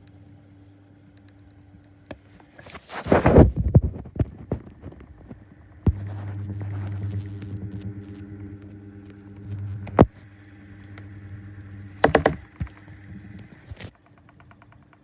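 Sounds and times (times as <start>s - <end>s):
fan motor hum: 1.2s - 14.0s
sharp knocks: 12.0s - 12.9s.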